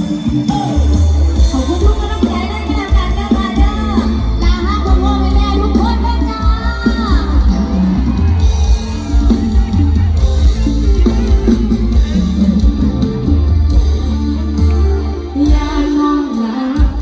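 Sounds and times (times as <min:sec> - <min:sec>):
heavy bass line: 0:00.0 - 0:16.2
band music with drum kit: 0:00.0 - 0:17.0.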